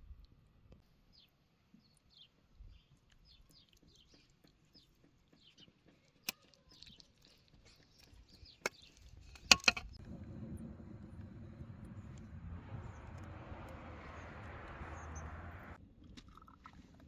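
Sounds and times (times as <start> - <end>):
small birds chirping: 0.8 - 10.0, 11.9 - 15.8.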